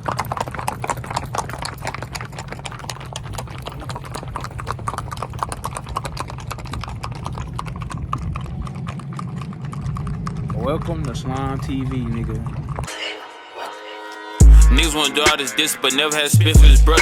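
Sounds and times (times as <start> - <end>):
horse hooves clip-clopping: 0.0 - 12.9.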